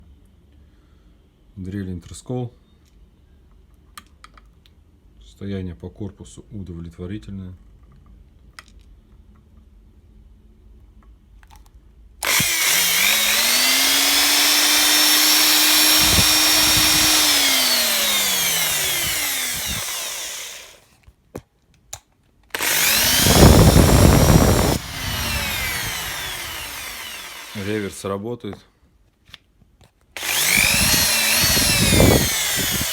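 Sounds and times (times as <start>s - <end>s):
drill clicks: 12.2s - 20.8s, 22.5s - 28.0s, 30.2s - 32.9s
electric drill whining: 12.2s - 20.8s, 22.6s - 28.0s, 30.2s - 32.9s.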